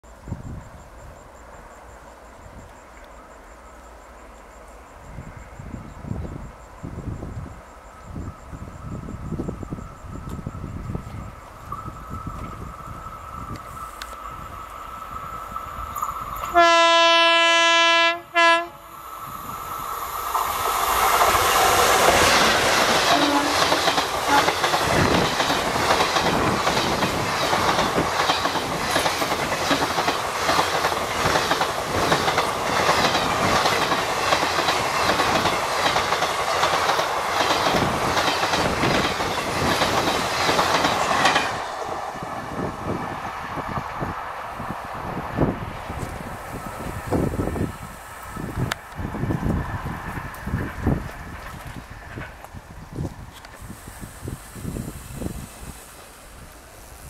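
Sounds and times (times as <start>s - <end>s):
electric locomotive horn: 16.4s - 19.0s, 23.1s - 24.6s
train wheels clattering over rail joints: 20.1s - 42.0s.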